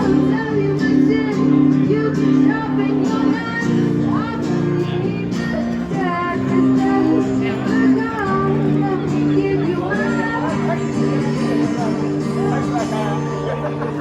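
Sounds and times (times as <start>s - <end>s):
country-pop song with guitar: 0.0s - 14.0s.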